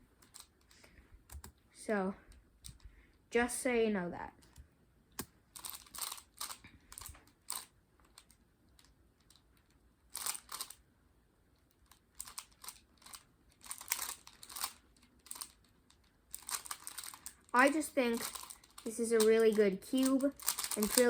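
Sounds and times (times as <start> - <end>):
puzzle cube plastic clicking: 4.4 - 10.8, 11.6 - 21.0.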